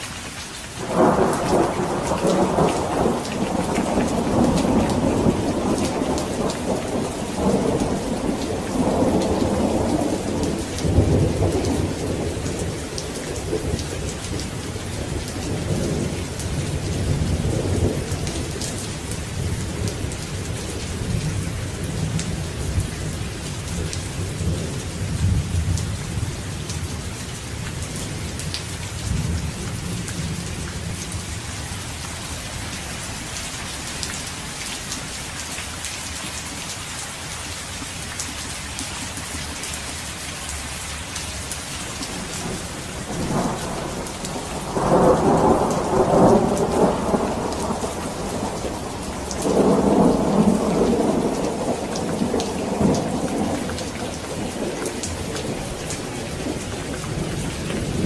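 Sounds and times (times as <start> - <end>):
steady rain: 0.0 - 58.0
thunder rumbling: 0.8 - 27.0, 41.2 - 58.0.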